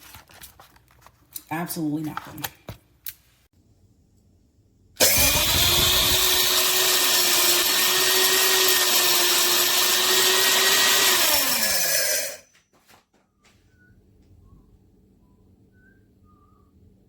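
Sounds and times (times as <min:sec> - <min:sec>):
grain mill motor whining: 0:05.0 - 0:12.4.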